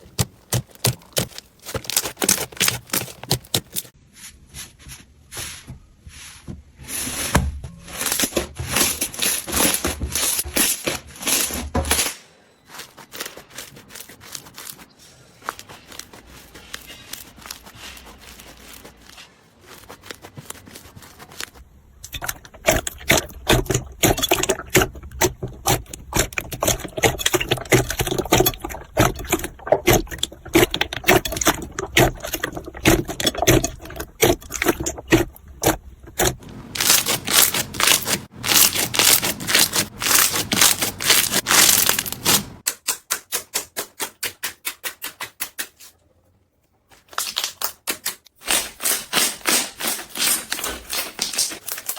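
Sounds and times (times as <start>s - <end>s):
slime crackling and popping: 0.0s - 3.9s, 19.8s - 42.6s.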